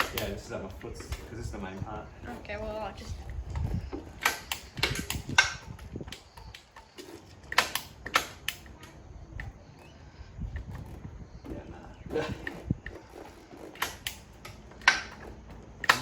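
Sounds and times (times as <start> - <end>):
sharp clicks and knocks: 3.0 - 11.7, 12.3 - 16.0.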